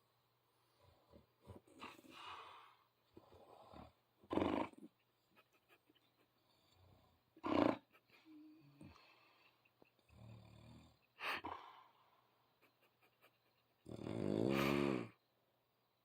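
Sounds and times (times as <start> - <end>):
person snoring: 13.8 - 15.2.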